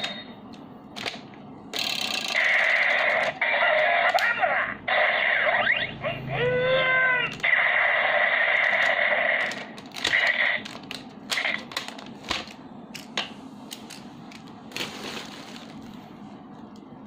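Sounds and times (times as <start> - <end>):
toy gun electronic blast: 1.8 - 6.0, 7.4 - 10.7.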